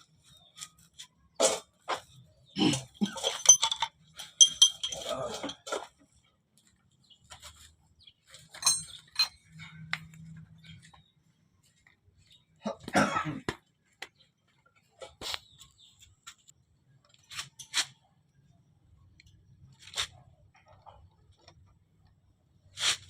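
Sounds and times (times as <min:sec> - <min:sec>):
metal tools clinking and knocking: 0:02.7 - 0:06.0, 0:08.4 - 0:10.5.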